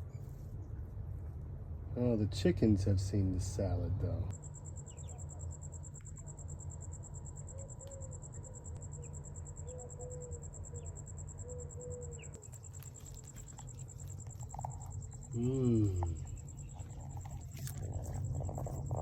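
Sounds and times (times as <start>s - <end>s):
cricket trilling: 4.3s - 19.0s.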